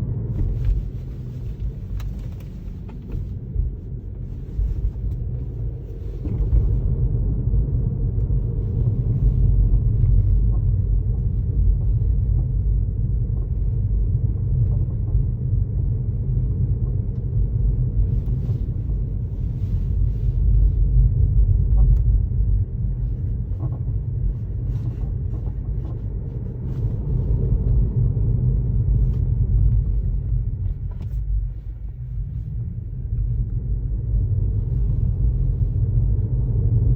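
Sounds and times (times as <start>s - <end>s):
car road rumble: 0.0s - 36.9s.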